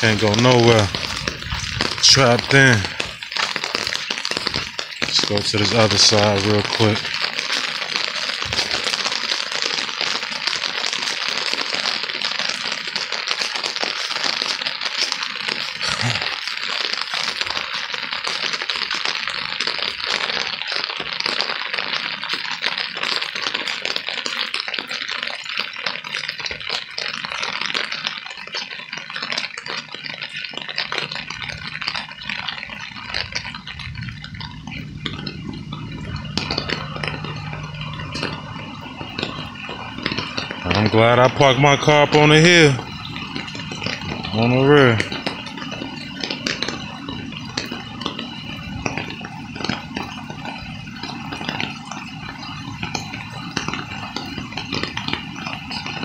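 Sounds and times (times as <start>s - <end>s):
low steady hum: 0.0s - 7.2s, 31.3s - 56.0s
rain pattering on hard surfaces: 0.0s - 56.0s.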